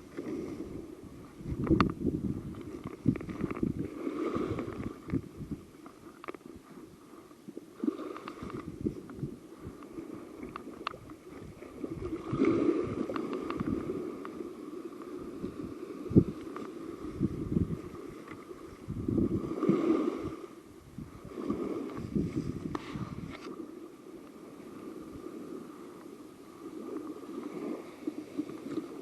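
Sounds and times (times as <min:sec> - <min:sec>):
wind buffeting microphone: 0:00.0 - 0:07.1, 0:08.2 - 0:14.4, 0:15.2 - 0:23.6
crackles and knocks: 0:01.5 - 0:03.8, 0:05.8 - 0:06.5.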